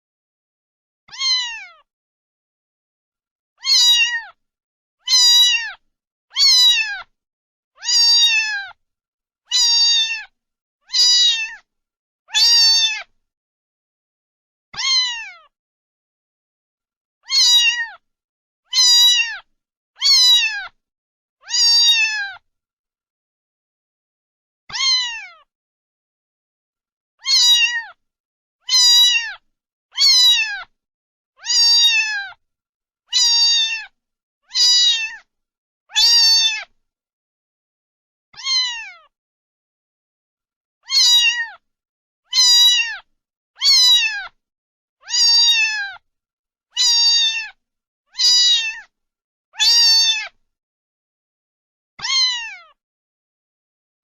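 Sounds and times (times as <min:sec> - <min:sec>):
cat meowing: 0:01.1 - 0:01.9, 0:03.6 - 0:04.4, 0:05.0 - 0:07.1, 0:07.8 - 0:08.8, 0:09.5 - 0:11.7, 0:12.3 - 0:13.1, 0:14.8 - 0:15.5, 0:17.2 - 0:18.0, 0:18.7 - 0:20.8, 0:21.4 - 0:22.4, 0:24.7 - 0:25.5, 0:27.2 - 0:28.0, 0:28.6 - 0:29.4, 0:30.0 - 0:30.7, 0:31.4 - 0:32.4, 0:33.1 - 0:35.3, 0:35.9 - 0:36.8, 0:38.4 - 0:39.1, 0:40.8 - 0:41.6, 0:42.3 - 0:44.4, 0:45.0 - 0:46.0, 0:46.7 - 0:48.9, 0:49.6 - 0:50.4, 0:52.0 - 0:52.8.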